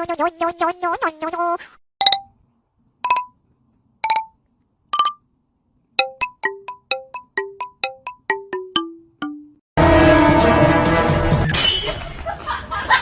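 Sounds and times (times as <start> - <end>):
plucked ringtone melody: 2.0 - 2.3, 3.1 - 3.3, 4.0 - 4.3, 5.0 - 5.2, 6.0 - 9.6.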